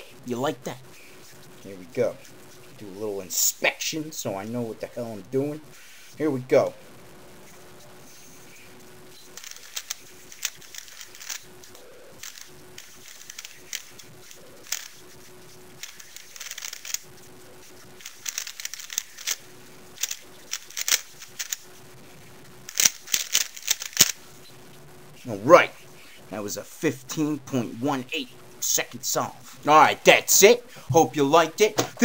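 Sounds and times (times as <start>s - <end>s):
plastic puzzle cube clicking: 9.4s - 11.4s, 12.2s - 13.9s, 15.8s - 17.0s, 18.0s - 19.4s, 20.0s - 21.6s, 22.7s - 24.2s.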